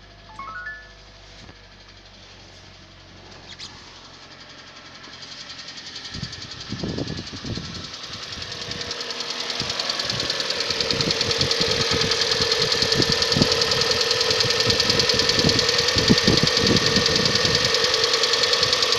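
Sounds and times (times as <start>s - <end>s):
car engine running: 0.0s - 18.9s
fast metallic ticking: 7.8s - 18.9s.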